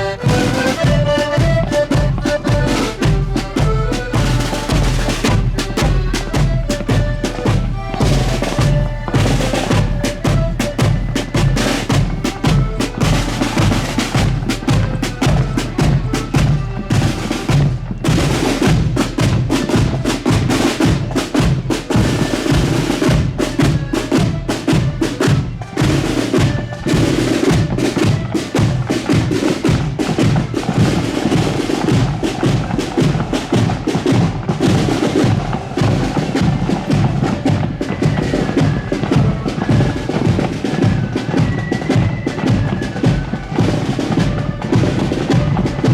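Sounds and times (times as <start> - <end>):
bass drum beating time: 0.0 - 25.6, 43.2 - 45.9
accordions playing a march: 0.0 - 45.9
snare drums: 0.0 - 45.9.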